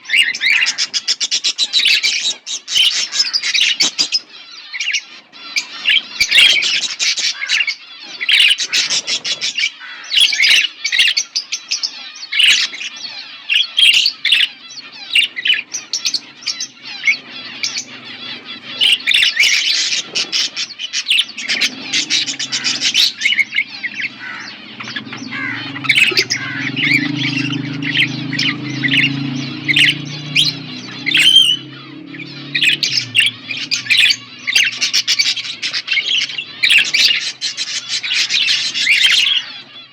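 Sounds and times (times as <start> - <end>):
budgerigars chirping: 0.0 - 39.9
low steady hum: 14.6 - 38.8.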